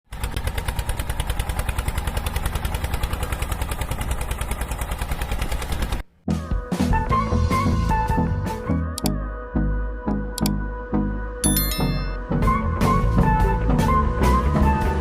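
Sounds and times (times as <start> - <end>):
tractor diesel engine running: 0.1 - 6.1
music: 6.2 - 15.0.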